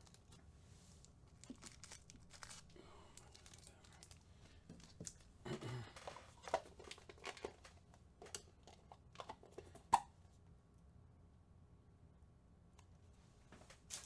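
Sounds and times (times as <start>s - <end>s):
plastic packaging crinkling: 1.0s - 8.4s.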